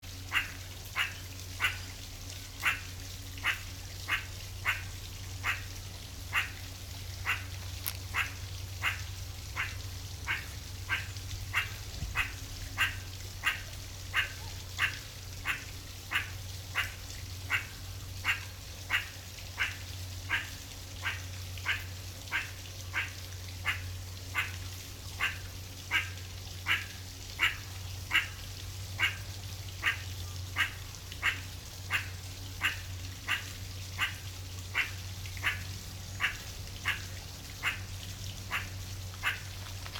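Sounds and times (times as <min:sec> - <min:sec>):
meerkat calling: 0:09.6 - 0:16.9.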